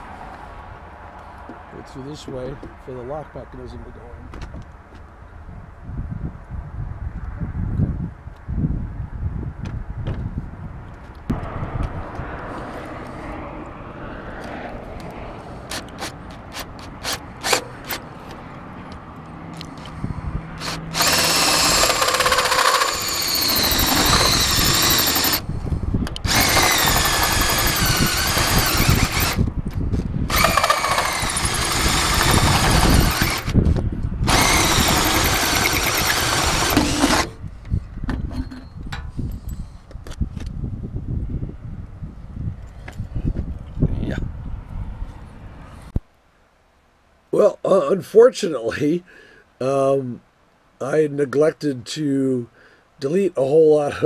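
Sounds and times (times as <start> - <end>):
power drill whining: 15.7 - 18.0, 20.6 - 25.5, 26.2 - 29.5, 30.3 - 33.6, 34.2 - 37.4.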